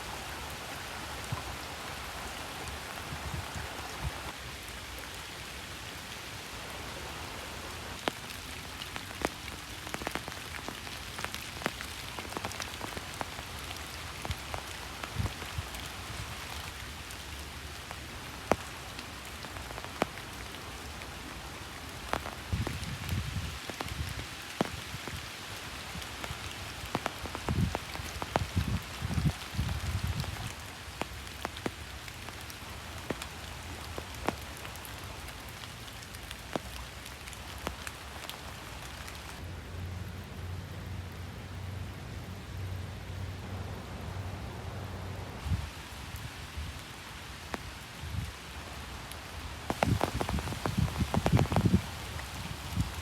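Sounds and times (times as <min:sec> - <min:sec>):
steady rain falling: 0:00.0 - 0:53.0
raindrops tapping sharply: 0:06.7 - 0:16.8, 0:25.9 - 0:39.4, 0:49.2 - 0:53.0.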